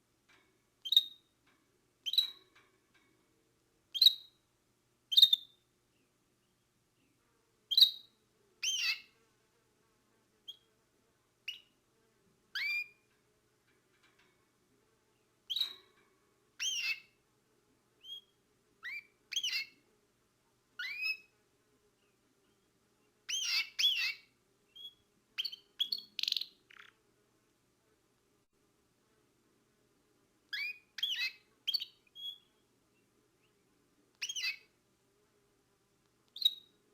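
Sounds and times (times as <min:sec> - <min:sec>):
canary chirping: 0:00.3 - 0:03.2, 0:03.8 - 0:04.5, 0:05.1 - 0:09.2, 0:10.4 - 0:10.7, 0:11.4 - 0:11.8, 0:12.5 - 0:14.3, 0:15.1 - 0:17.2, 0:18.0 - 0:19.9, 0:20.8 - 0:21.4, 0:22.0 - 0:27.0, 0:30.5 - 0:34.8, 0:36.2 - 0:36.9.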